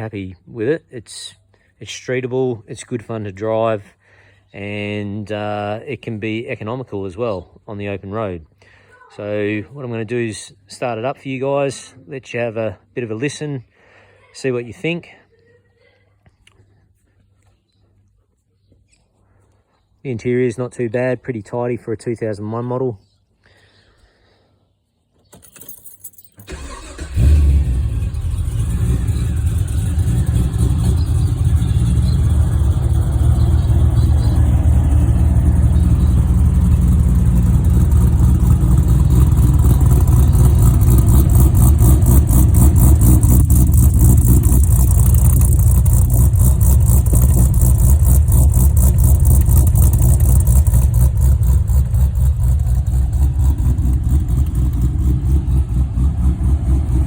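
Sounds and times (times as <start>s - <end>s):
engine starting and idling: 26.4s - 57.0s.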